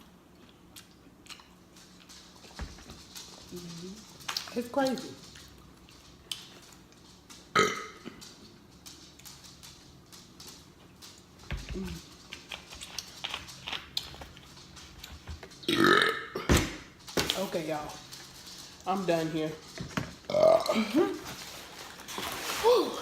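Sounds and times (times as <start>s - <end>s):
woman burping: 7.6s - 8.2s, 15.7s - 16.5s, 20.3s - 21.2s.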